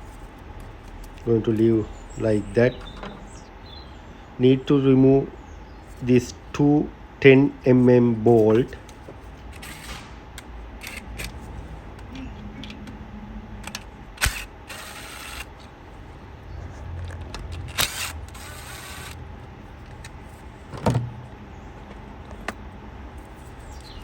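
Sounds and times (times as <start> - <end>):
tools scraping and rattling: 9.4 - 10.2.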